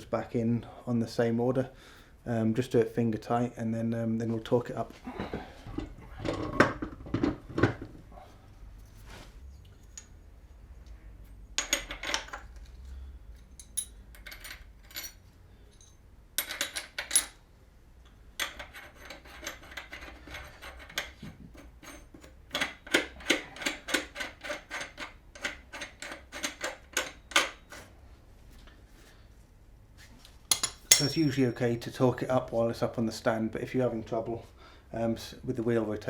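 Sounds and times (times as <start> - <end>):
metal clinks and clatter: 13.4 - 17.4, 30.5 - 31.6.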